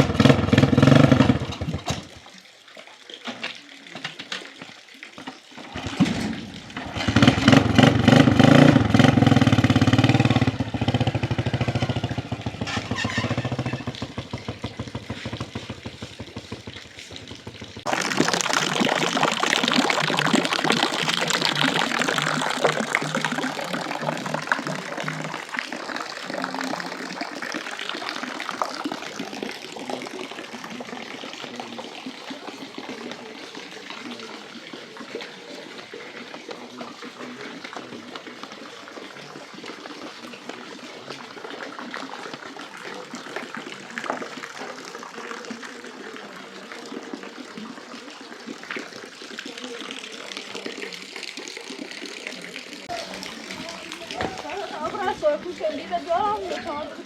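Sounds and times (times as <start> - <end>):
running water: 0.0 - 57.0.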